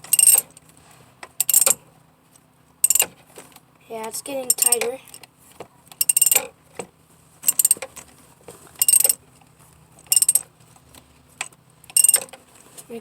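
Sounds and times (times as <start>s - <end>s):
ratchet wrench clicking: 0.0s - 0.5s, 1.4s - 1.8s, 2.8s - 3.1s, 4.5s - 4.9s, 6.0s - 6.5s, 7.5s - 7.9s, 8.8s - 9.2s, 10.1s - 10.5s, 11.9s - 12.3s.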